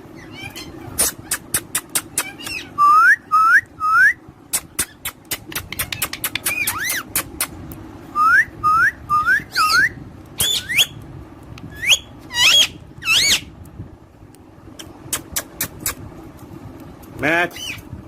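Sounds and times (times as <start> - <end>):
parrot whistling: 2.2 - 4.2, 8.2 - 11.0, 11.7 - 13.5.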